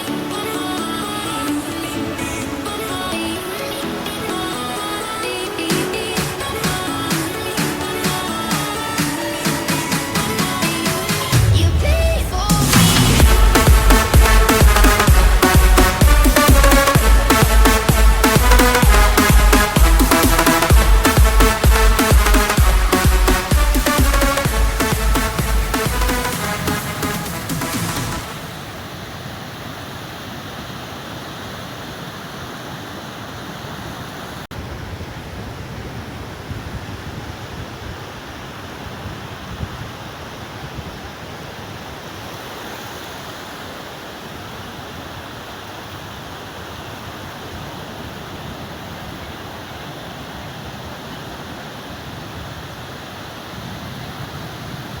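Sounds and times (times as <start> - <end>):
sea surf on shore: 0.0 - 55.0.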